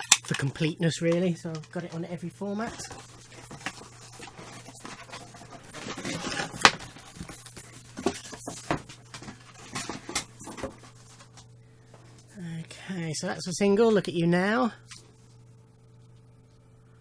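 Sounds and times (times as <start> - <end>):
packaging rustling and scraping: 1.3 - 12.3.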